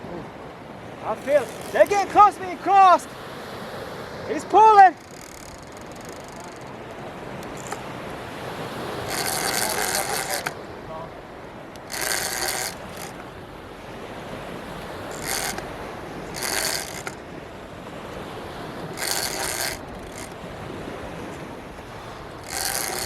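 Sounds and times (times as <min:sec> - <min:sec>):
steady surf: 0:00.0 - 0:23.0
fishing reel drag buzzing: 0:01.1 - 0:02.8, 0:04.6 - 0:10.6, 0:11.7 - 0:13.4, 0:14.9 - 0:17.3, 0:18.8 - 0:20.7, 0:22.0 - 0:23.0.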